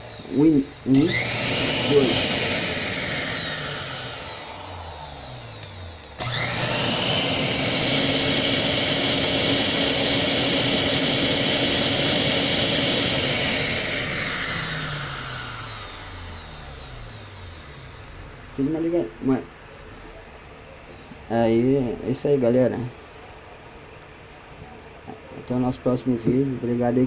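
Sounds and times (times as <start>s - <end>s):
blender motor whining: 0.0s - 18.8s.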